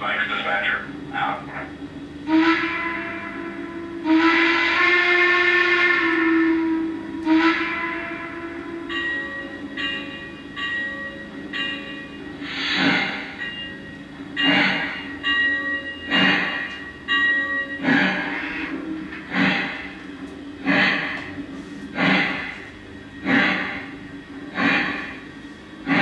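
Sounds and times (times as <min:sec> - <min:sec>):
steam whistle blast: 0:02.2 - 0:09.0
ringing bell tone: 0:08.9 - 0:12.3, 0:13.4 - 0:17.8
steam hiss: 0:12.4 - 0:13.4, 0:16.1 - 0:16.7, 0:19.3 - 0:19.9, 0:23.2 - 0:25.2.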